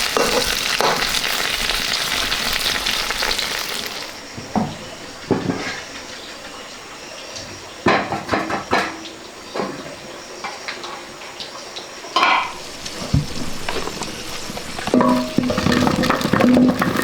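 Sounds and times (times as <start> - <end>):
metal utensil scraping cooking pot: 12.4 - 17.0.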